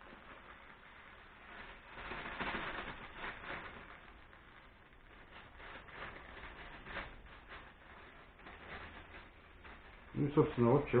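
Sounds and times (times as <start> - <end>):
sugar pouring hiss: 0.0 - 5.6.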